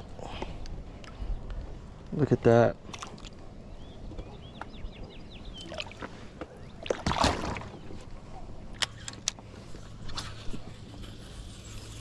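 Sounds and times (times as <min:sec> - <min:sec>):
bird chirping: 0:03.6 - 0:06.8
water sloshing around kayak: 0:05.4 - 0:09.8.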